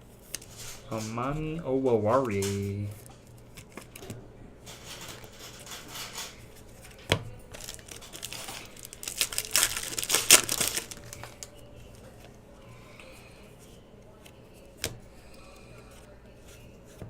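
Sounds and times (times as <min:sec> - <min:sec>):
plastic wrapper crinkling and tearing: 0:07.5 - 0:11.6.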